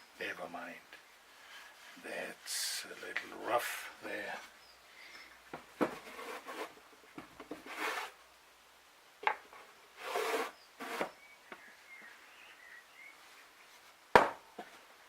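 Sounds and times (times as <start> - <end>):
scratchy rubbing on wood: 6.0 - 6.7, 7.6 - 8.1, 10.0 - 11.1
wood knocking: 14.2 - 14.7.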